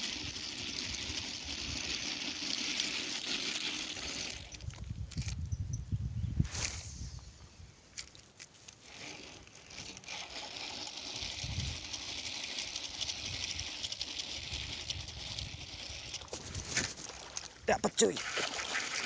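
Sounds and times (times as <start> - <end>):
fishing reel whirring: 0.0 - 4.6, 8.8 - 16.4.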